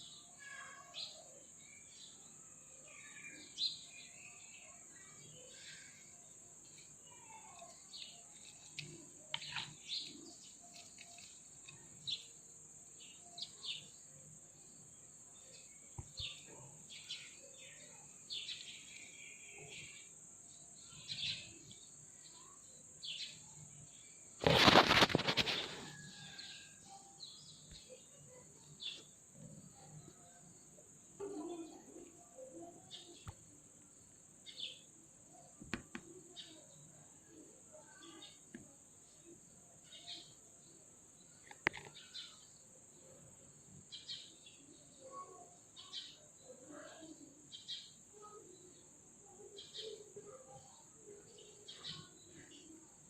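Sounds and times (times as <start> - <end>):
loud rustling: 24.4 - 25.9
bird chirps: 41.3 - 52.8.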